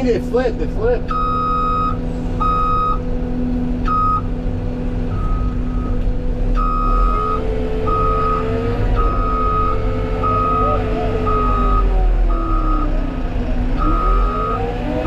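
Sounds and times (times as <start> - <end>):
diesel engine running: 0.0 - 15.0
backup alarm beeping: 1.1 - 3.0, 3.9 - 4.3, 5.1 - 6.0, 6.6 - 8.4, 9.0 - 12.9.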